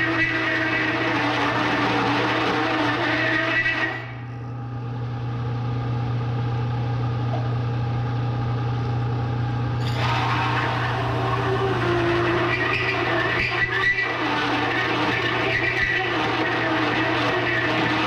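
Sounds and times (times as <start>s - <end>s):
milling machine humming: 0.0s - 18.0s
hole saw cutting steel: 9.8s - 18.0s.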